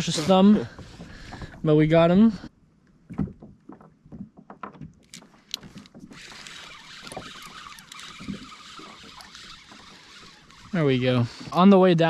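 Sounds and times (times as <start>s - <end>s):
light clicks and knocks of gear: 3.4s - 11.7s.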